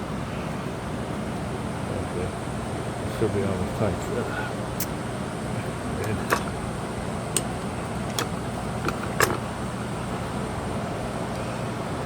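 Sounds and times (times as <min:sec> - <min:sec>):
tools clicking and tapping: 0:06.0 - 0:06.6, 0:07.4 - 0:09.4.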